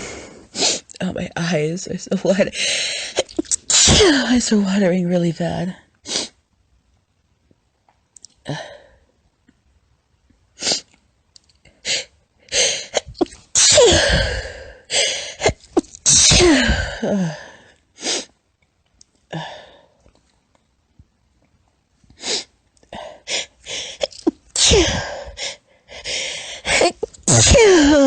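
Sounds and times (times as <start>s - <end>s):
woman sneezing: 3.2s - 4.4s, 12.9s - 14.5s, 15.4s - 17.4s, 24.0s - 25.3s, 26.7s - 28.0s.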